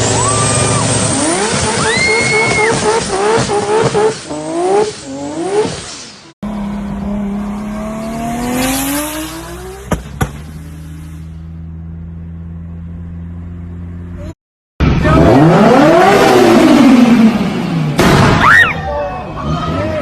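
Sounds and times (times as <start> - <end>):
high squeal: 0.0 - 3.0
car engine revving: 0.0 - 18.4
engine backfire bangs: 9.8 - 10.7, 17.9 - 18.6
car engine idling: 9.9 - 14.3.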